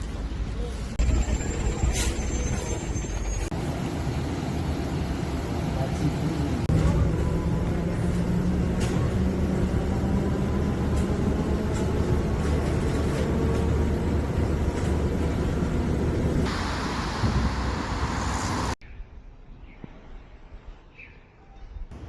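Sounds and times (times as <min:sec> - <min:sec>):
vehicle rumble: 0:00.0 - 0:18.8
bright hiss: 0:16.5 - 0:18.8.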